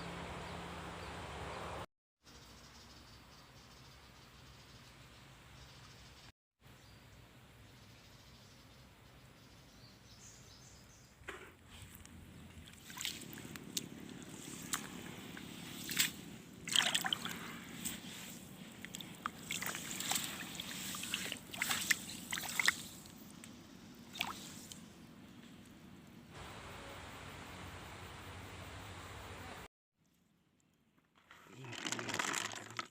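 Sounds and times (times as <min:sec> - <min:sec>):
water sloshing and splashing: 0:12.0 - 0:23.3, 0:24.1 - 0:24.8.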